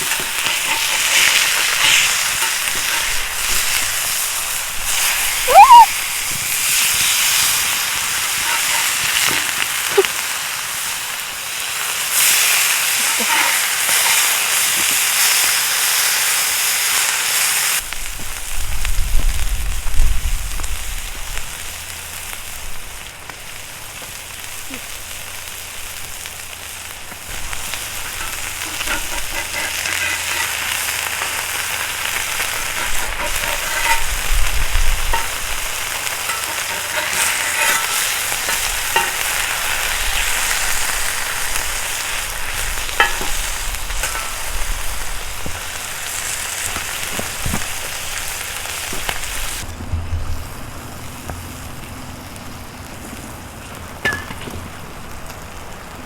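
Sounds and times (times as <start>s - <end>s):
food sizzling in a pan: 0.0s - 56.0s
low rumbling: 49.6s - 53.5s.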